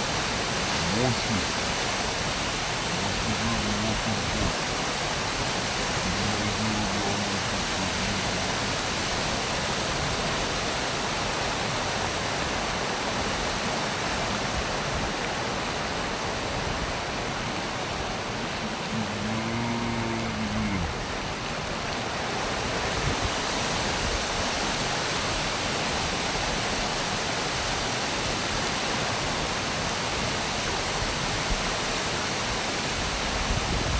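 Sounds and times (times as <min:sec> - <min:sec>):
waterfall crashing: 0:00.0 - 0:33.7.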